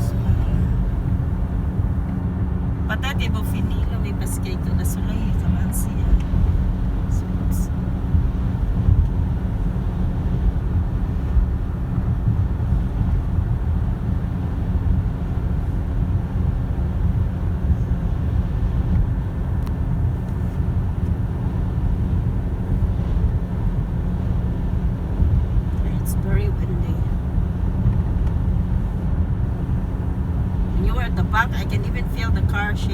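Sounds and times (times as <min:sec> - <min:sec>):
car road and engine noise: 0:00.0 - 0:32.9.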